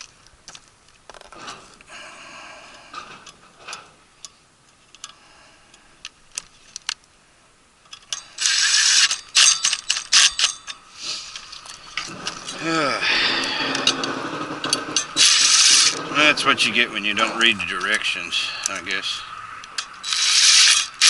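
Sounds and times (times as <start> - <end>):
screws and metal parts clicking: 7.8 - 12.6, 13.4 - 16.1, 19.6 - 21.0
rapid metal rattling: 11.4 - 18.6.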